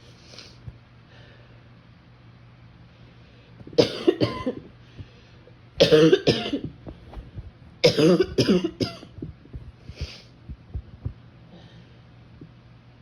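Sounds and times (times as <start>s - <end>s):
woman coughing: 3.8s - 4.6s, 5.8s - 6.7s, 7.8s - 9.2s.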